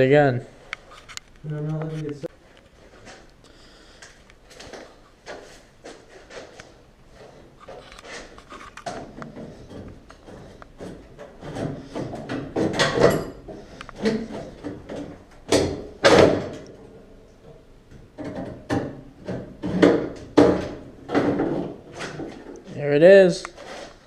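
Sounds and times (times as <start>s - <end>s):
metal clunks and knocks: 8.8s - 16.7s, 17.4s - 22.6s.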